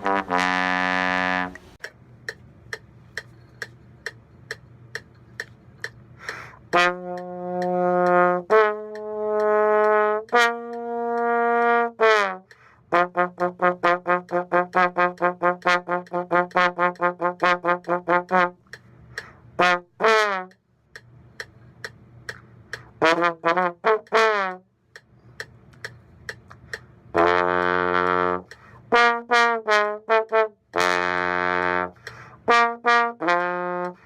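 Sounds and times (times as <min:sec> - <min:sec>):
solo brass instrument playing: 0:00.0 - 0:01.8, 0:06.7 - 0:18.6, 0:19.6 - 0:20.6, 0:22.9 - 0:24.7, 0:27.1 - 0:34.0.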